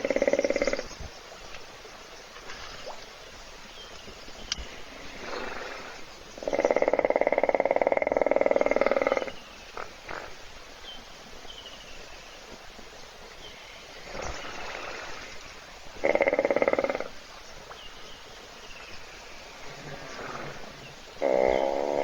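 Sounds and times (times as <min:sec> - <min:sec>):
hippopotamus snoring: 0:04.9 - 0:10.4, 0:16.0 - 0:17.2, 0:19.5 - 0:22.0
hippopotamus breathing: 0:19.6 - 0:21.6.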